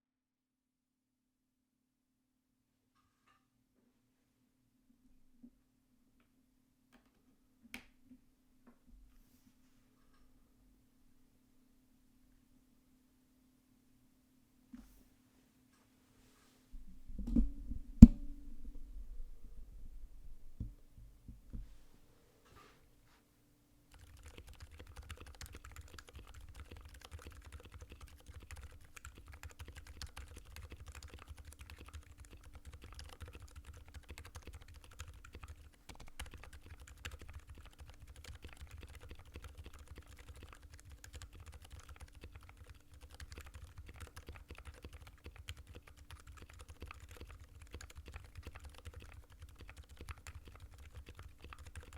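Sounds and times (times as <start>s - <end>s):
mechanical keyboard typing: 23.9s - 51.9s.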